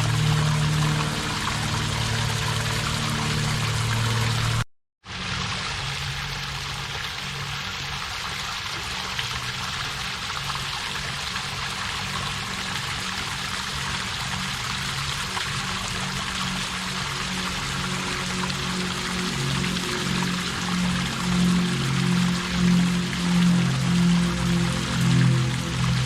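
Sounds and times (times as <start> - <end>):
waterfall rushing: 0.0 - 4.6, 15.3 - 26.0.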